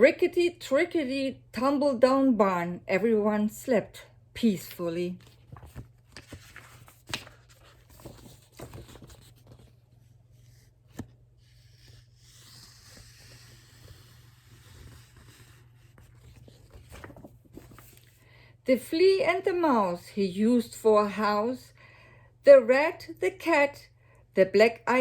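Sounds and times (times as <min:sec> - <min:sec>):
book pages rustling: 0:05.0 - 0:18.3.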